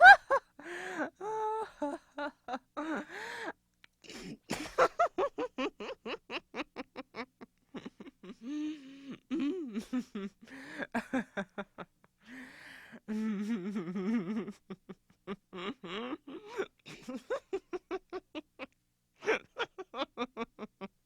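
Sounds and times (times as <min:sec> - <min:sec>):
woman giggling: 0:00.0 - 0:03.1, 0:04.1 - 0:08.5, 0:09.5 - 0:11.9, 0:13.4 - 0:21.0
breath: 0:00.6 - 0:01.1, 0:03.0 - 0:03.5, 0:10.5 - 0:10.9, 0:12.2 - 0:13.1.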